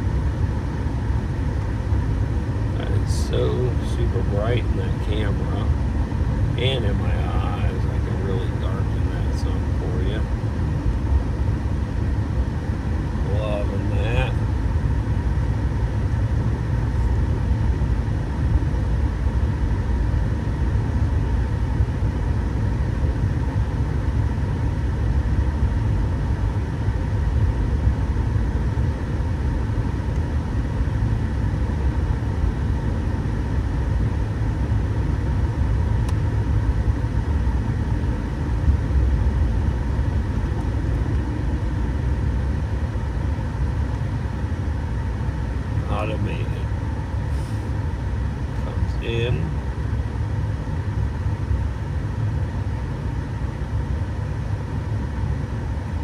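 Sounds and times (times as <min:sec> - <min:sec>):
car engine and road noise: 0:00.0 - 0:20.2.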